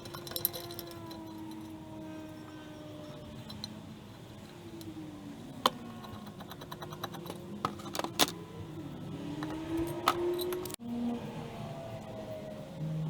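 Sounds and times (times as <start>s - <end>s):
metal tools clinking: 0.0s - 8.4s, 9.3s - 10.8s
low background hum: 0.0s - 10.8s.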